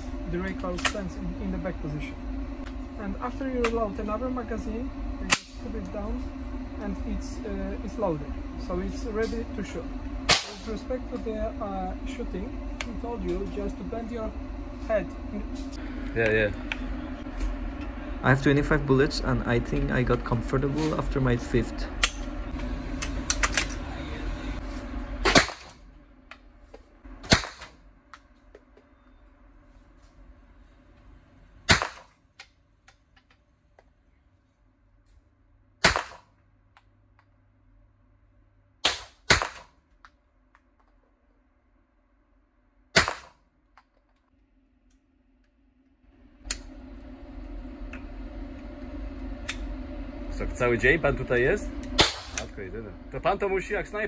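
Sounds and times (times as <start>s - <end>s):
steady hum: 0.0s - 54.0s
gunshot: 43.0s - 43.4s.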